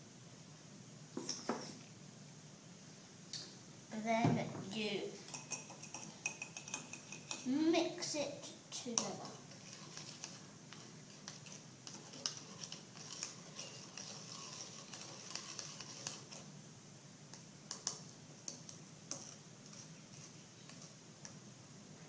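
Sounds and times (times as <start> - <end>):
spoon stirring in a container: 5.3 - 7.5, 8.9 - 16.5, 17.3 - 21.4.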